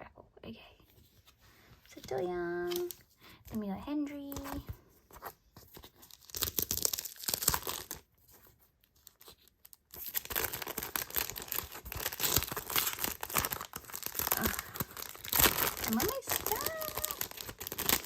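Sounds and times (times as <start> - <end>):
packaging torn and crinkled: 5.7 - 18.0.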